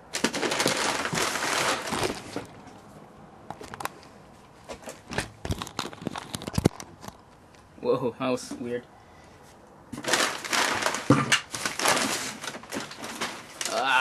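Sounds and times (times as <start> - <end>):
plastic packaging crinkling: 0.1 - 2.7, 5.5 - 7.2, 10.0 - 14.0.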